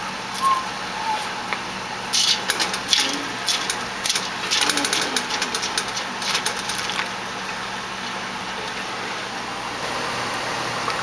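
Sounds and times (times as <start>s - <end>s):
kitchen appliance humming: 0.0s - 11.0s
rattling clicks: 2.2s - 7.2s.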